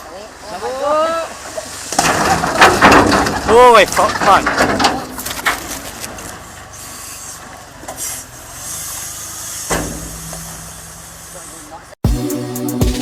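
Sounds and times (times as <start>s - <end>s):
heavy machinery scraping: 1.4s - 11.6s.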